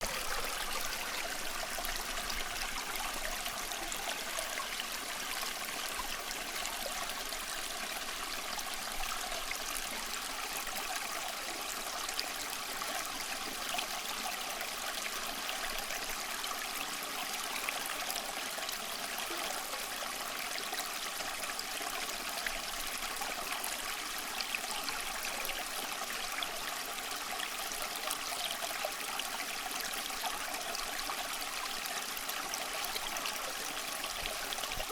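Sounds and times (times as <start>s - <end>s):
stream flowing over stones: 0.0s - 34.9s.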